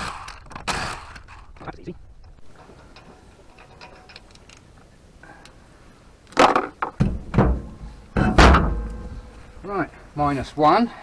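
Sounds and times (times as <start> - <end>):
loud knocks: 6.8 - 9.7.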